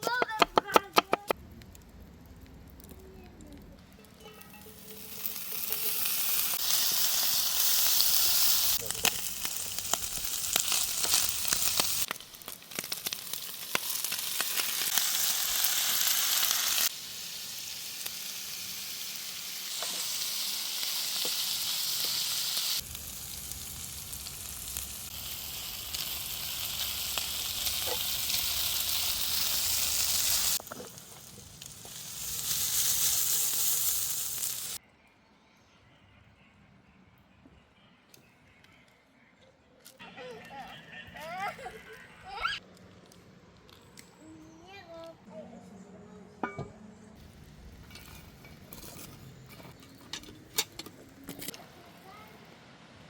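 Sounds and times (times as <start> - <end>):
food frying sizzle with pops: 1.0 - 34.8.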